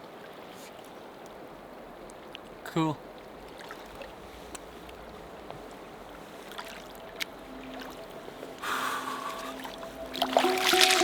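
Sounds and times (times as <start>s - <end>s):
river current rushing: 0.8s - 11.0s.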